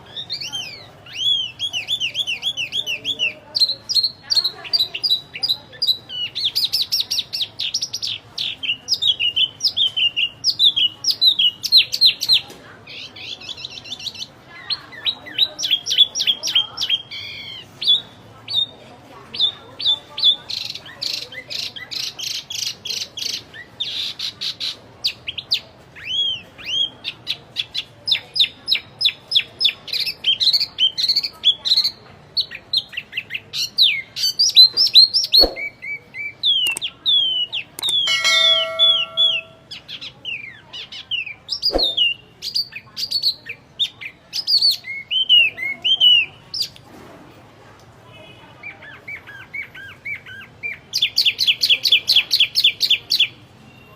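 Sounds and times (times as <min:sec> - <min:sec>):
songbird singing: 0:00.0 - 0:46.8
brief clicks: 0:36.6 - 0:36.9, 0:37.8 - 0:38.1
buzzy bird note: 0:37.8 - 0:39.7.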